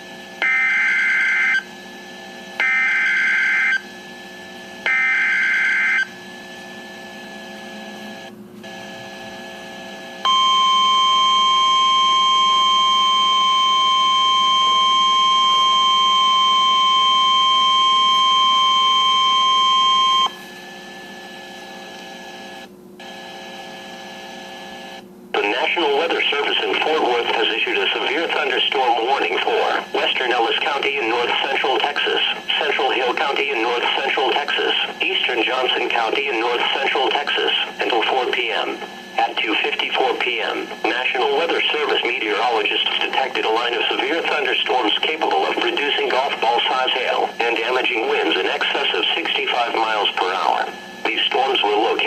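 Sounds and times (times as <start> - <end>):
radio background hiss: 25.3 - 52.0.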